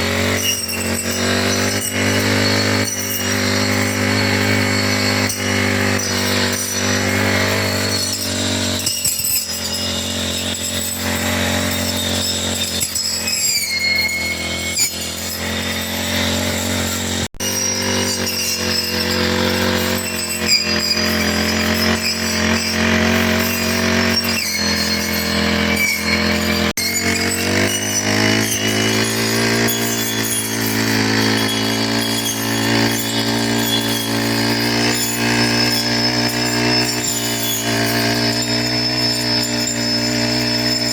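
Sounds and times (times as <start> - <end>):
brush cutter engine cutting grass: 0.0 - 40.9.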